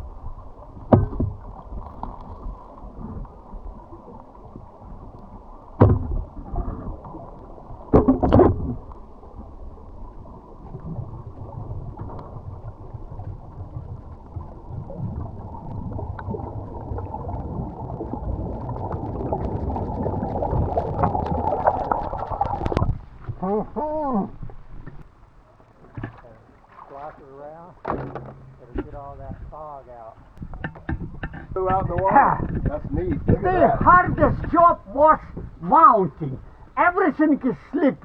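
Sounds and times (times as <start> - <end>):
regulator bubbles gushing: 0.0 - 25.0
water rushing underwater: 0.0 - 36.8.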